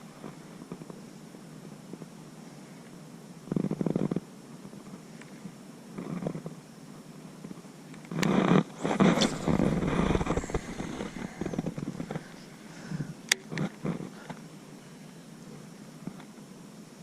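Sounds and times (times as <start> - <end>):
rough rumbling with sharp clicks: 7.4 - 14.4
fishing reel gears whirring: 8.8 - 13.4.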